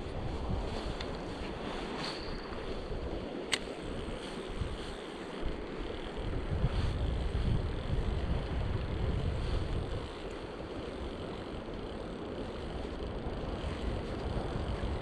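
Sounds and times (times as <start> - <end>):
wind rumbling on microphone: 0.0 - 15.0.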